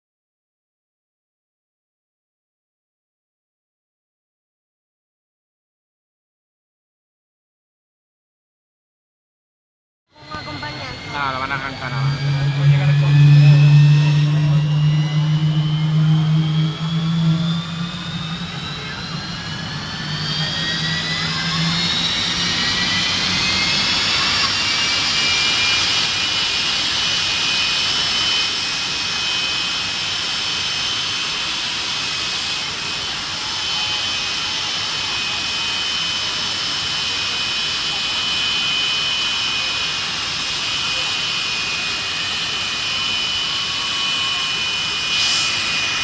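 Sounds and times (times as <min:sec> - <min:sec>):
jet turbine whine: 0:10.1 - 0:46.0
low drone: 0:10.2 - 0:46.0.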